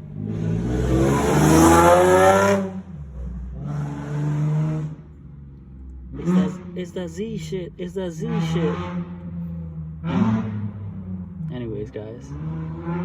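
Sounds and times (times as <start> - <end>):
sports car accelerating past: 0.0 - 5.2, 8.7 - 11.5, 12.3 - 13.0.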